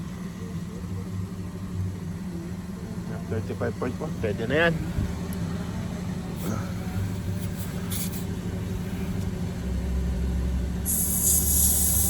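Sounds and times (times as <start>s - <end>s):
car engine idling: 0.0s - 12.0s
air hissing at tire valve: 6.4s - 9.4s, 10.8s - 12.0s.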